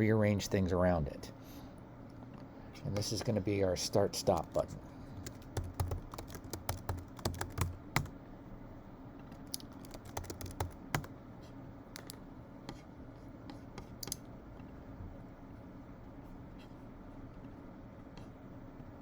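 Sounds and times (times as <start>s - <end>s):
typing on computer keyboard: 4.2s - 8.1s, 9.3s - 11.1s, 12.0s - 12.2s.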